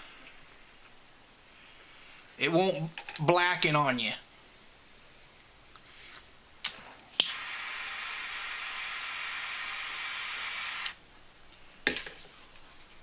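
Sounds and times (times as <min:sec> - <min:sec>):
lighter flame hissing: 0:06.7 - 0:11.0.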